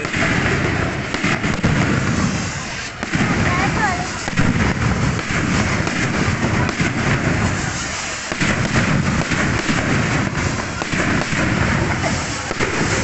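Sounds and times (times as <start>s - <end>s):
fireworks crackling and popping: 0.0s - 13.0s
low rumble of fireworks bursts: 0.0s - 13.0s.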